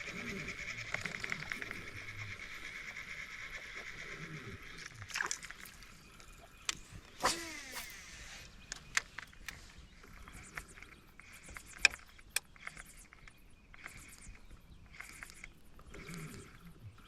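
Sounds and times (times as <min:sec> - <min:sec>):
fishing reel spool whirring: 0:00.0 - 0:04.9, 0:05.5 - 0:08.9
reel clicks: 0:04.8 - 0:16.4
lure splashing in water: 0:06.7 - 0:08.1.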